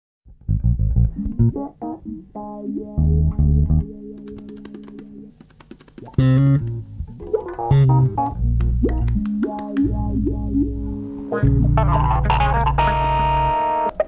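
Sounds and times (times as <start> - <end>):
plucked bass notes: 0.3 - 4.3, 6.1 - 14.0
synthesizer chords: 0.6 - 5.3, 6.0 - 13.9.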